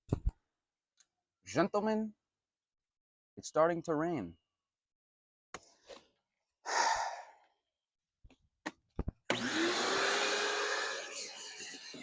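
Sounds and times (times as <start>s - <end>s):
breathy exhale: 6.6s - 7.4s
vacuum cleaner motor whine: 9.3s - 12.0s.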